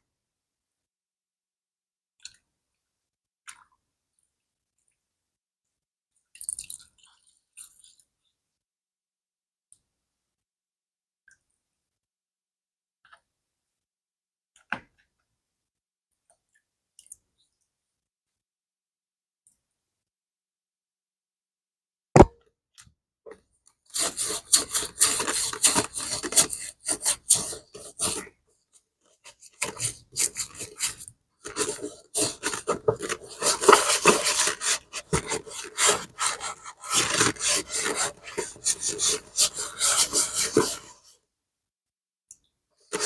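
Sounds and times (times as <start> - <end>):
sharp knock: 22.2 - 22.4
brush scrubbing leather: 23.9 - 28.3, 29.2 - 41.1.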